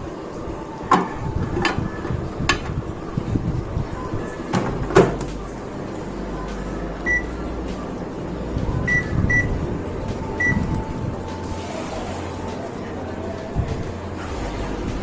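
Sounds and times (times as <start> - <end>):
microwave humming: 0.0 - 15.0
keypad beeps: 7.0 - 7.3, 8.8 - 9.6, 10.4 - 10.8.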